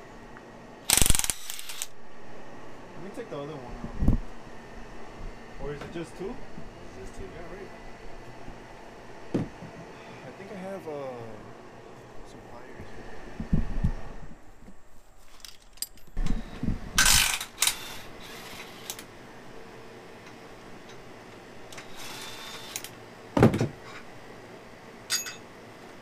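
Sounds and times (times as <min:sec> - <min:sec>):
heavy thump: 0:09.3 - 0:09.6
metal tools clattering: 0:25.1 - 0:25.5.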